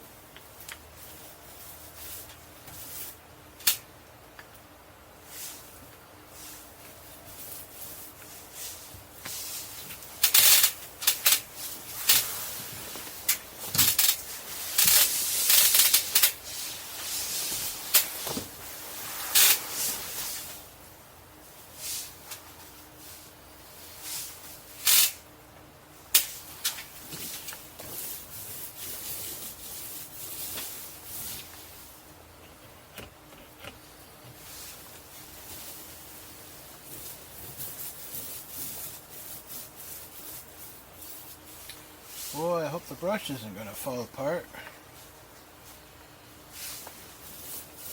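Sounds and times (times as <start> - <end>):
paintbrush scrubbing scratchy strokes: 35.6 - 42.8.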